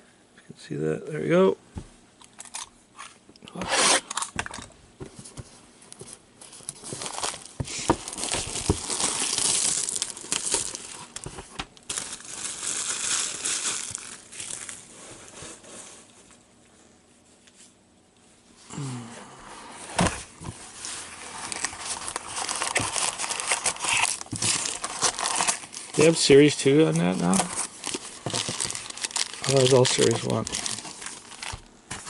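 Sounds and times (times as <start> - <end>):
wrapper crinkling: 6.4 - 14.9, 20.8 - 32.0
card pack wrapper tearing: 8.1 - 11.2, 21.4 - 31.7.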